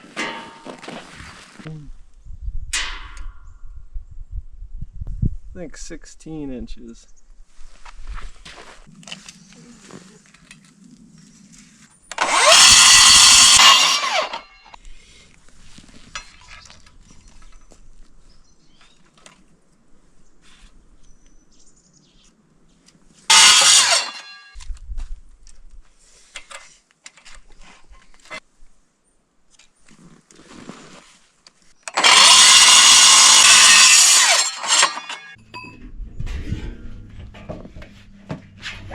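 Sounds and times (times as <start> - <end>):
angle grinder cutting steel: 12.1 - 14.8, 23.3 - 24.6, 31.9 - 35.4.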